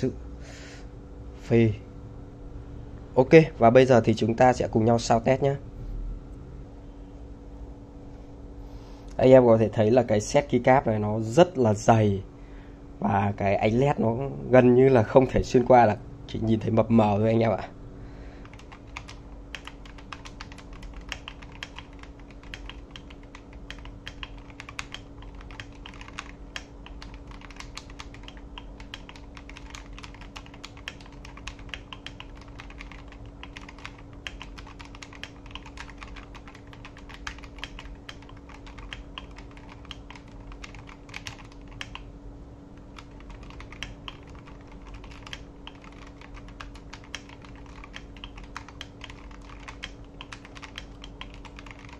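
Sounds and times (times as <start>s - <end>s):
faint steady hum: 0.0s - 51.9s
mechanical keyboard typing: 18.4s - 42.1s, 42.8s - 51.9s.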